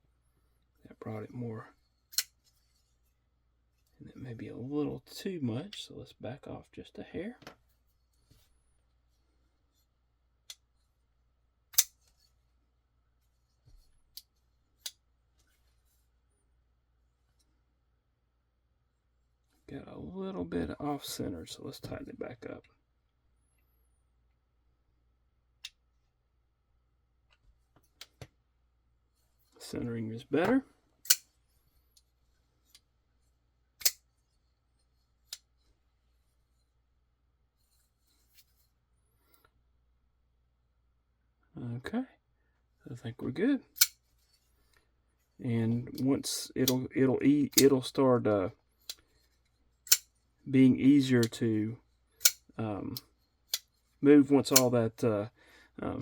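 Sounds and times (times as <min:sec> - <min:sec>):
knife blade clicking open and shut: 0:02.1 - 0:02.3, 0:11.7 - 0:12.0, 0:31.0 - 0:31.3, 0:33.8 - 0:34.0, 0:43.8 - 0:44.0, 0:49.9 - 0:50.1, 0:52.2 - 0:52.4
folding knife clicking: 0:43.8 - 0:44.0, 0:52.2 - 0:52.4.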